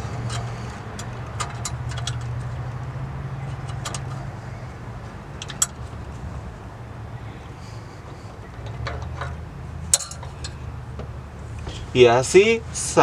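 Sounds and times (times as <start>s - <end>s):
steady low hum: 0.0s - 13.0s
metallic clicks of tools: 0.1s - 2.7s.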